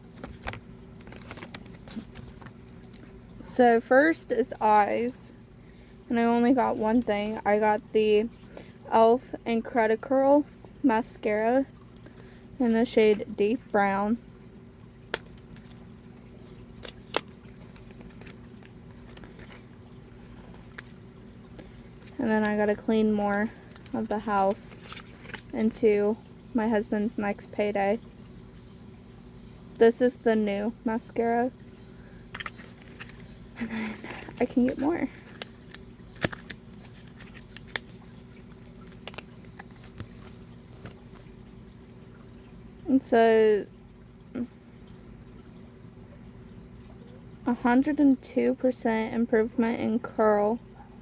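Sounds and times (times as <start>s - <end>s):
steady low hum: 0.0s - 51.0s
package handling clicks: 35.3s - 37.9s.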